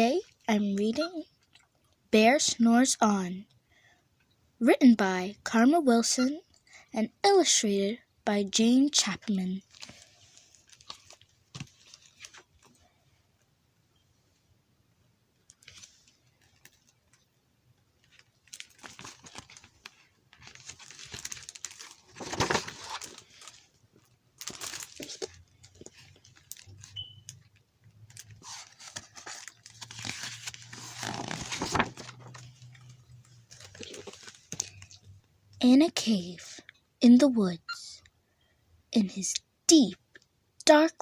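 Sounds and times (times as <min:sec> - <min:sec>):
book pages rustling: 0:09.7 - 0:12.9, 0:15.5 - 0:17.2, 0:18.0 - 0:23.8, 0:24.4 - 0:27.0, 0:28.0 - 0:35.0.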